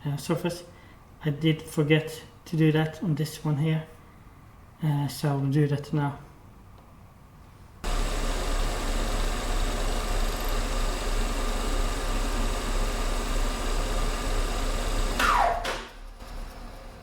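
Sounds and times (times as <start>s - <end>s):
lathe motor humming: 7.8s - 15.2s
lathe spinning down: 7.8s - 15.6s.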